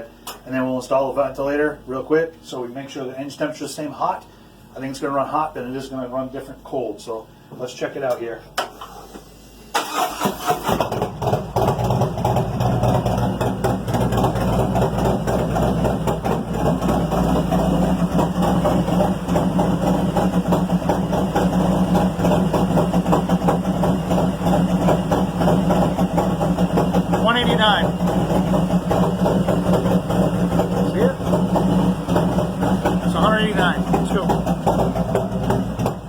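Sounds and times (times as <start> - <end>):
motorcycle engine idling: 10.9 - 36.0.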